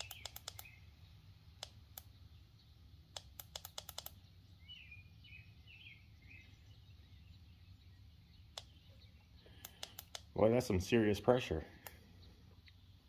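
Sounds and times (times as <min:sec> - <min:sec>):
faint bird chirps: 0:00.0 - 0:10.4, 0:11.0 - 0:13.0.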